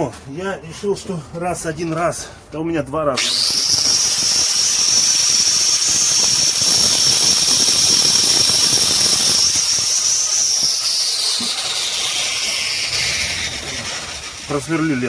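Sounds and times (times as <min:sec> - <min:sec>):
electric drill whining: 0:03.2 - 0:15.0.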